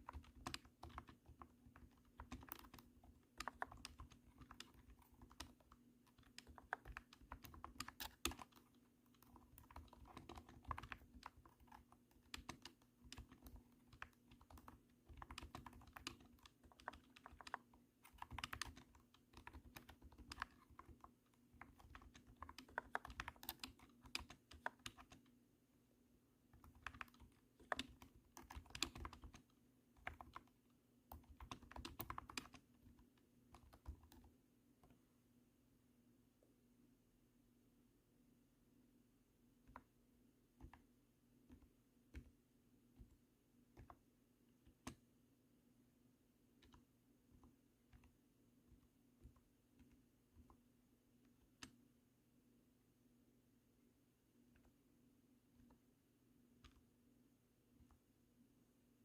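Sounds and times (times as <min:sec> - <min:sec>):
keyboard keystrokes clacking: 0:00.0 - 0:25.2, 0:26.6 - 0:34.3.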